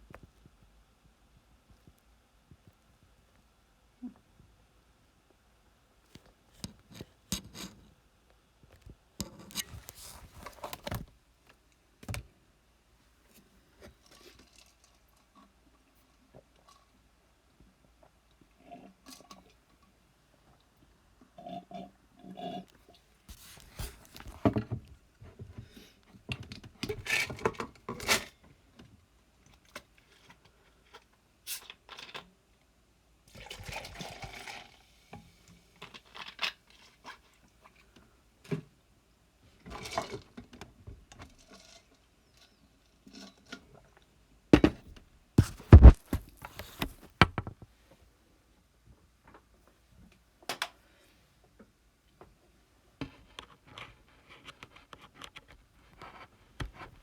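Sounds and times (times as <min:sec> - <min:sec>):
knocks from handling a tablet: 0:44.6 - 0:47.6
brief rubbing noises: 0:45.4 - 0:47.2
stylus tapping on a tablet screen: 0:45.4 - 0:47.5.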